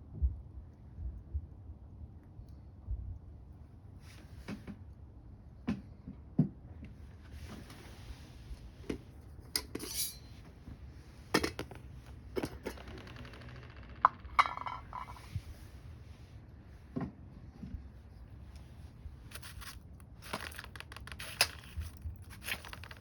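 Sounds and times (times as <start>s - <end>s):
wood fire crackling in a stove: 17.6s - 23.0s.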